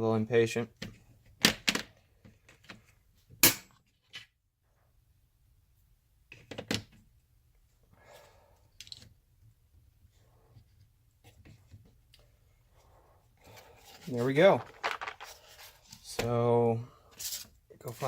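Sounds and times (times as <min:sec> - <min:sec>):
hard objects clicking and knocking: 0:14.6 - 0:15.4.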